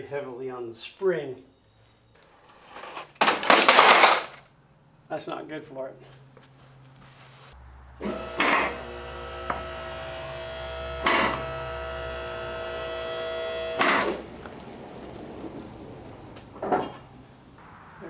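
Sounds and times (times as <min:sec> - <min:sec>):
lift clattering: 0:02.5 - 0:04.4
hydraulic pump motor running: 0:08.0 - 0:14.3.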